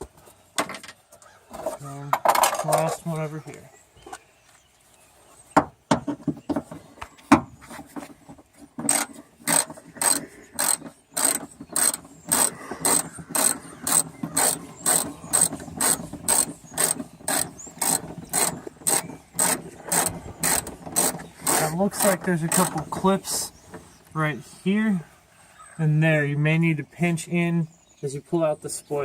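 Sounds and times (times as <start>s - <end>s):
hand ratchet clicking: 8.8s - 22.9s.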